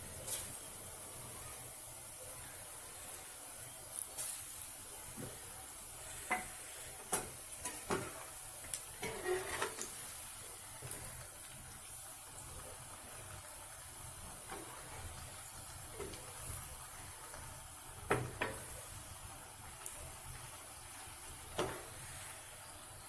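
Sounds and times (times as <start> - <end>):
food sizzling in hot oil: 0.0 - 23.0
spoon scraping a pan: 9.0 - 10.0.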